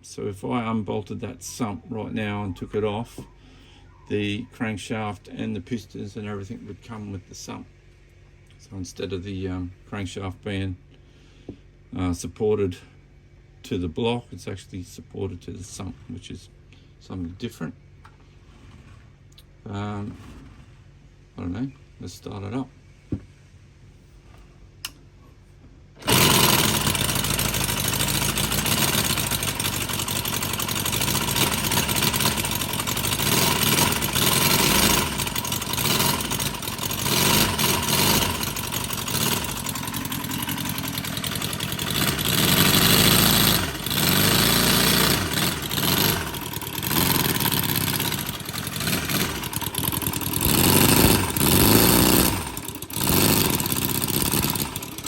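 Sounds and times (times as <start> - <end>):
engine rattles: 17.9 - 21.4, 25.8 - 55.0
model petrol engine running: 26.0 - 55.0.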